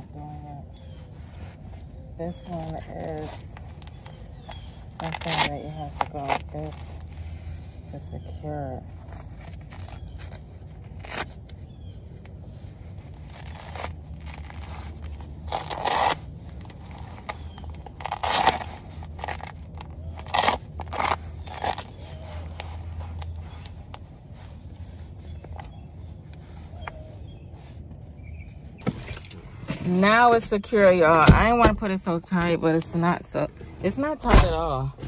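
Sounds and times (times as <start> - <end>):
fabric rustling and scraping: 0.1 - 8.1, 12.2 - 28.1.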